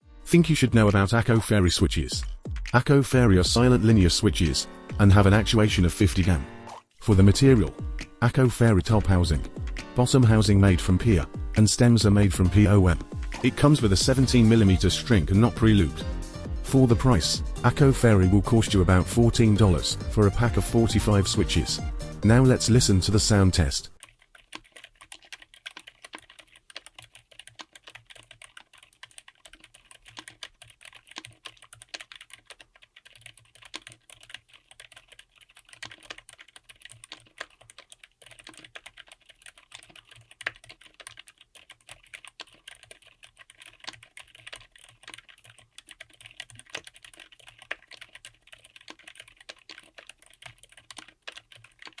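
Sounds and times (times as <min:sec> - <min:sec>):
soft keyboard keystrokes: 0:24.0 - 0:52.0.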